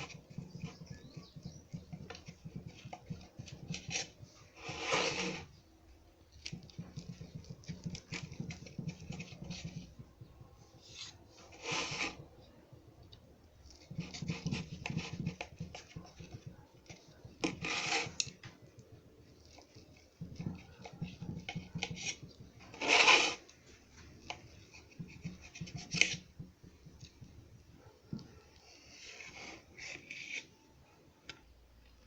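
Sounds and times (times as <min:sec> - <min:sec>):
knife cutting and scraping: 0:00.0 - 0:05.6, 0:10.8 - 0:12.2, 0:17.2 - 0:18.5, 0:19.4 - 0:23.5, 0:24.2 - 0:26.4, 0:28.6 - 0:30.6.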